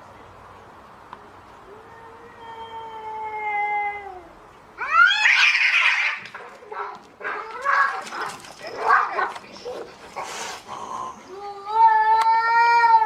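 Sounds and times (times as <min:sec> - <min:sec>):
angry cat yowling: 0:01.7 - 0:06.4.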